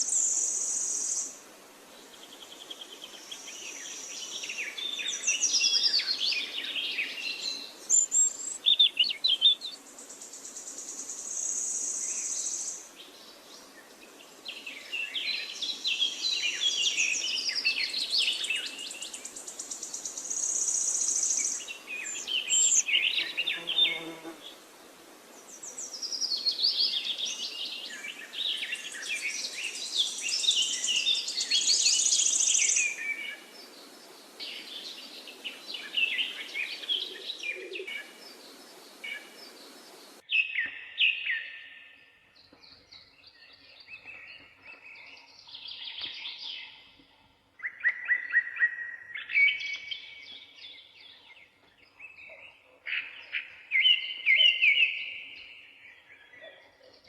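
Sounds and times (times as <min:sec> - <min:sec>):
songbird singing: 0:00.0 - 0:57.0.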